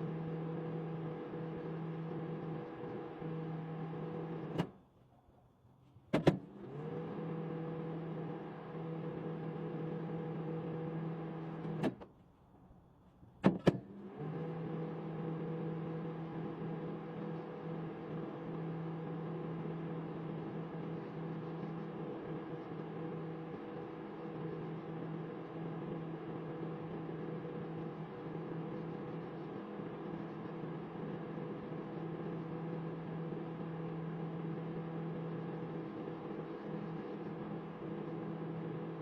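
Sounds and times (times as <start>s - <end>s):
microwave oven humming: 0.0s - 4.8s, 6.2s - 12.0s, 13.5s - 39.0s.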